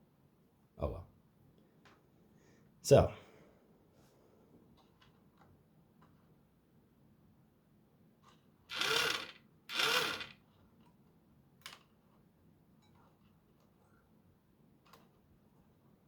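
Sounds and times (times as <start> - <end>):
toy motor whirring: 8.7 - 10.4.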